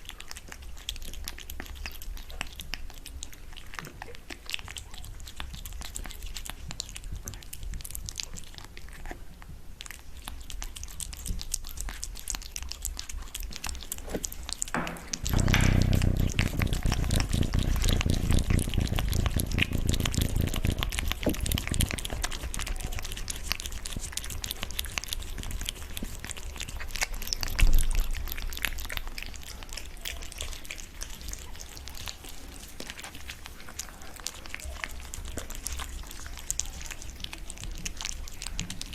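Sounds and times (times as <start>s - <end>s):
wet chewing and crunching: 0.0s - 38.9s
thump: 14.1s - 18.6s
low rumbling noise: 14.7s - 22.1s.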